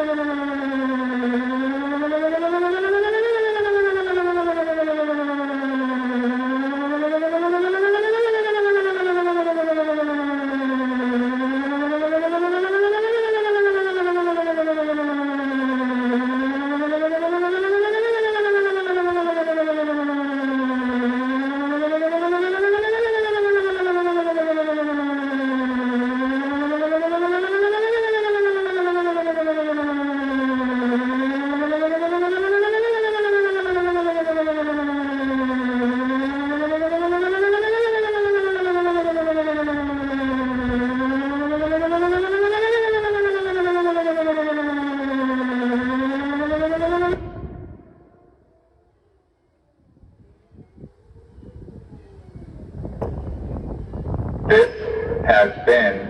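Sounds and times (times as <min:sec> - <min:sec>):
emergency siren wailing: 0:00.0 - 0:56.0.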